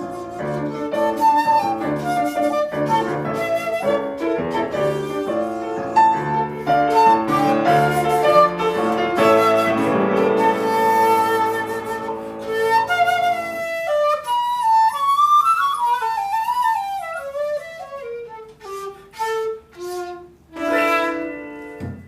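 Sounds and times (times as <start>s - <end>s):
breathy bamboo flute phrase: 0.0s - 14.3s
piano chord: 2.9s - 12.6s, 20.6s - 22.0s.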